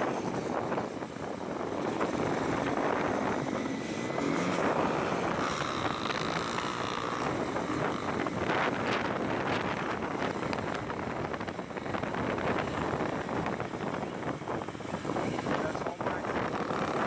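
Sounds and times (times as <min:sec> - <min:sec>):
motorcycle running: 0:00.0 - 0:17.0
wind rushing over microphone: 0:00.0 - 0:17.0.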